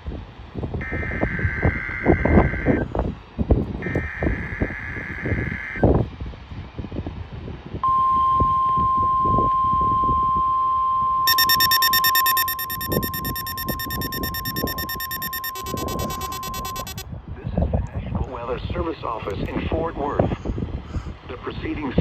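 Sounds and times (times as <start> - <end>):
electronic data screech: 11.3 - 17.0
rapid high electronic beeping: 11.3 - 17.0
steady warning alarm tone: 11.3 - 17.0.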